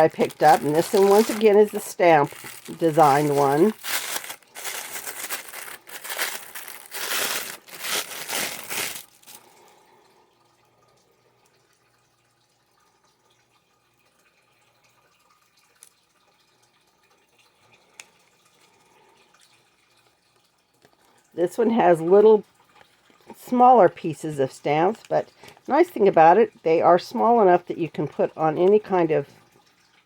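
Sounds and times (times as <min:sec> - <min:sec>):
plastic packaging crinkling: 0:00.0 - 0:09.6.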